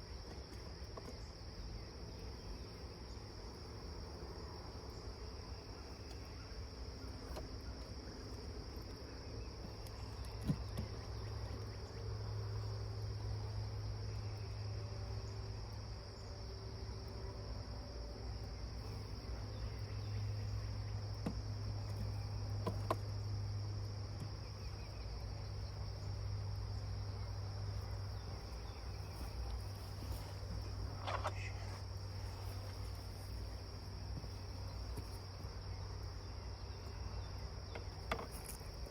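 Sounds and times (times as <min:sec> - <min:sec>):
cricket-like trill: 0:00.0 - 0:38.9.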